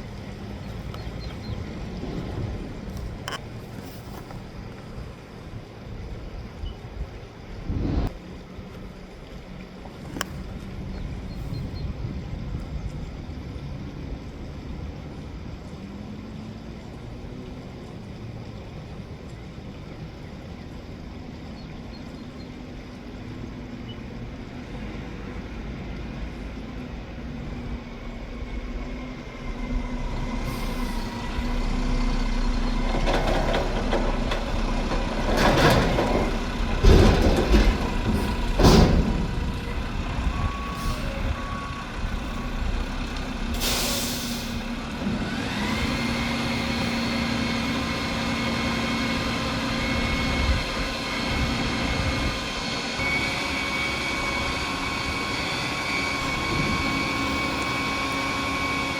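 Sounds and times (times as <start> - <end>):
garbage truck diesel engine: 0.0 - 58.9
air brake hiss: 30.5 - 31.6, 40.6 - 41.7, 43.5 - 44.8.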